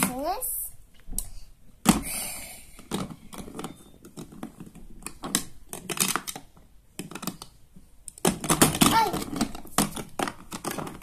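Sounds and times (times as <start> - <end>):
small objects clicking and tapping: 2.8 - 11.0.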